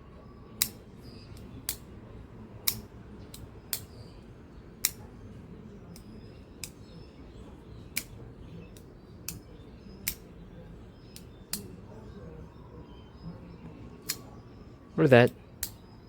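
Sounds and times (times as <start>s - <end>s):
folding knife clicking open and shut: 0.6s - 0.8s, 1.4s - 1.9s, 2.6s - 3.9s, 4.8s - 5.1s, 7.9s - 8.2s, 8.8s - 10.3s, 11.1s - 11.7s, 14.0s - 14.3s.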